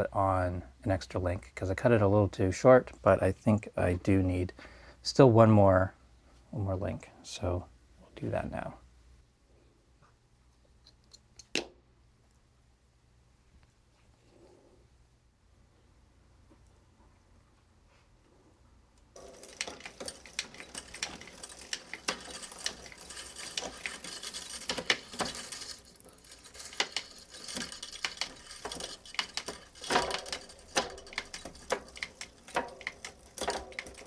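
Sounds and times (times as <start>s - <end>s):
bicycle chain rattling: 19.2s - 34.0s
sharp drivetrain clicks: 19.2s - 34.0s.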